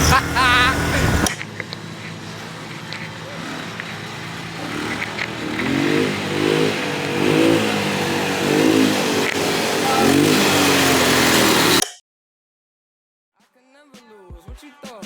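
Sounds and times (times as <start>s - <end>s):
wind noise: 0.0s - 1.3s
atv engine revving: 0.0s - 11.9s
road noise: 0.0s - 11.9s.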